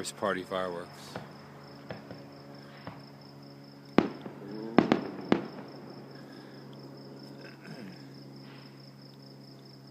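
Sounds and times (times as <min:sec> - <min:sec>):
crickets chirring: 0:00.0 - 0:09.9
fireworks bangs: 0:01.0 - 0:03.2, 0:04.0 - 0:06.7
fireworks crackling: 0:01.0 - 0:03.2, 0:03.9 - 0:07.8.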